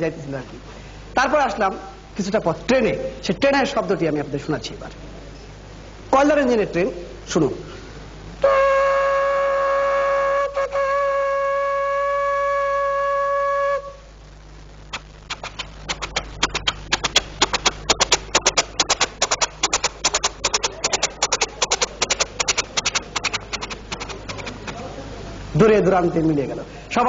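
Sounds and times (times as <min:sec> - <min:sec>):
steam locomotive whistle: 0:08.4 - 0:14.0.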